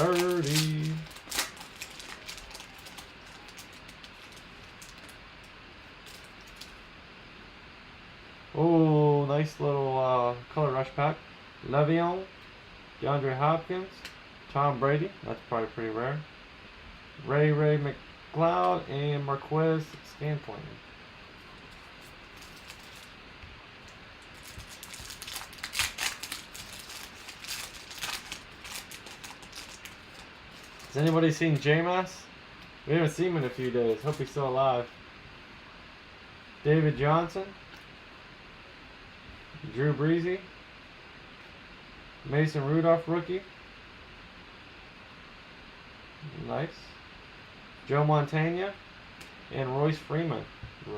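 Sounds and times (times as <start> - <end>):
trading cards ticking and rustling: 0.0 - 5.1
cards and packaging rustling: 0.0 - 5.2, 6.0 - 6.8, 21.4 - 23.2, 23.8 - 31.8, 33.3 - 34.5
low hiss: 0.0 - 50.9.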